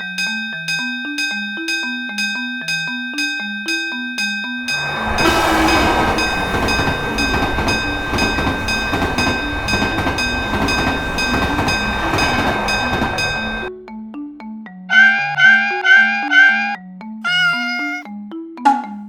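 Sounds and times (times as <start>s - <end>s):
crossing signal chime tones: 0.0s - 13.7s
train wheels on rails: 4.7s - 13.7s.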